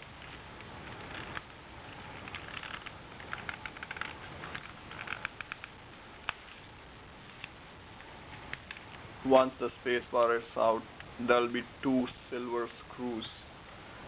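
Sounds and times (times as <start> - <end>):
small plastic clicks and rattles: 2.2 - 6.4.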